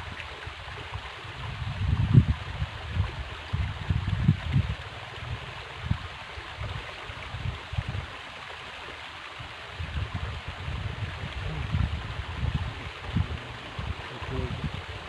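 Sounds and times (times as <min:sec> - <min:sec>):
river water flowing: 0:02.5 - 0:15.0
low rumbles: 0:10.9 - 0:15.0.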